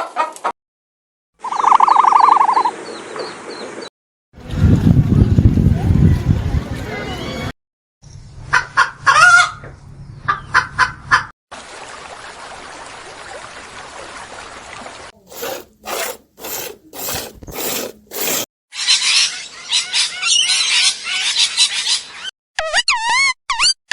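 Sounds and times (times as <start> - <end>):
rasping animal chatter: 15.3 - 18.4
animal hissing: 15.3 - 18.5.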